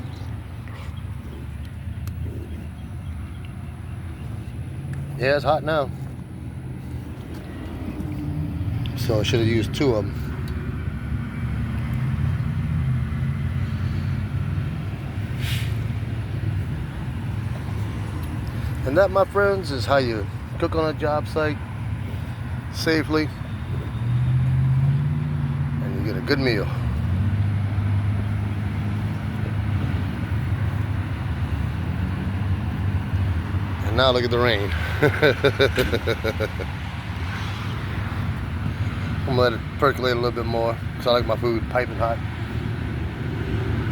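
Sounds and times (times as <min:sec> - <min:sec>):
vehicle engine rumbling: 0:00.0 - 0:43.9
brief hiss: 0:15.4 - 0:15.8.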